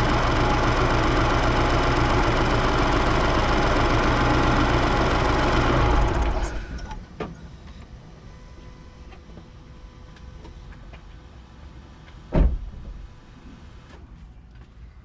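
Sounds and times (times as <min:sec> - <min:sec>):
car engine idling with whine: 0:00.0 - 0:14.3
loud thump: 0:12.3 - 0:12.9.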